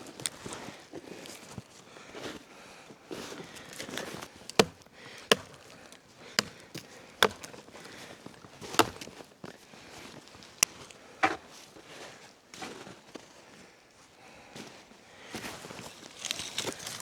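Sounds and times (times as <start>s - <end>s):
chopping strikes: 4.5s - 5.8s, 6.4s - 7.6s, 8.7s - 9.1s.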